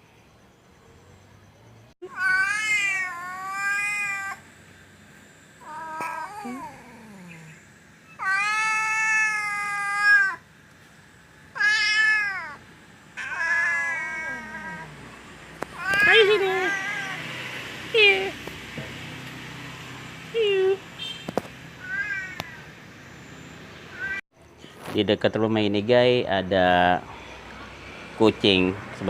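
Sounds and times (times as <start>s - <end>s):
cat meowing: 2.0s - 4.4s, 8.2s - 10.4s, 11.5s - 12.6s, 13.2s - 15.0s, 15.7s - 17.3s, 21.8s - 22.7s, 23.9s - 24.2s.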